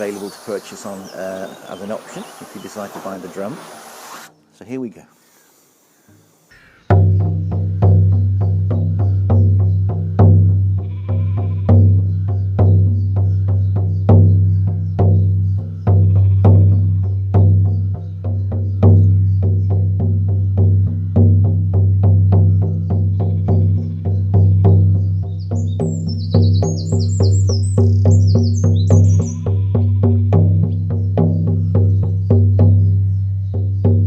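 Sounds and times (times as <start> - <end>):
frame drum beating: 6.9 - 34.0.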